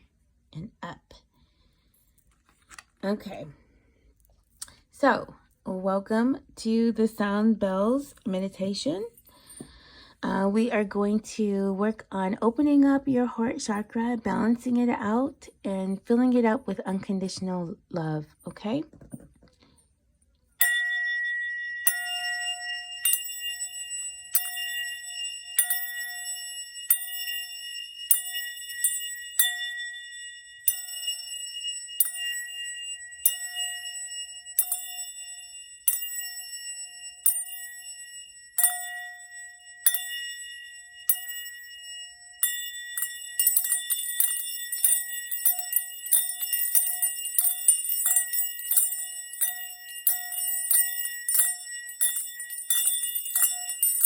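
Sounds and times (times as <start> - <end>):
small metal bells ringing: 20.6 - 54.0.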